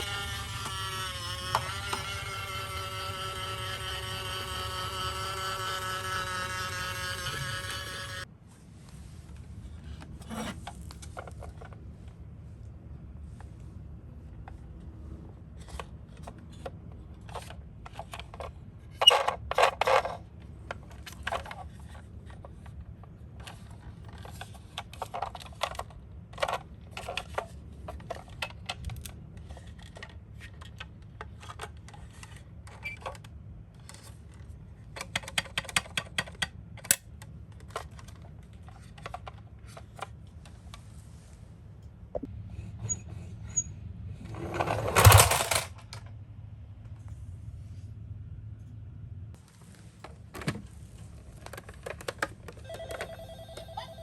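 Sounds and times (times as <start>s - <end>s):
toy cars clicking and clattering: 0.0s - 8.3s, 15.6s - 40.8s, 44.3s - 46.1s, 51.2s - 53.2s.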